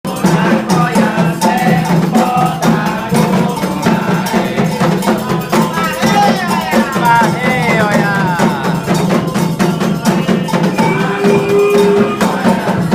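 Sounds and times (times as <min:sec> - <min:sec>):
hand drums playing fast rhythm: 0:00.1 - 0:12.9
iron bell: 0:01.4 - 0:12.9.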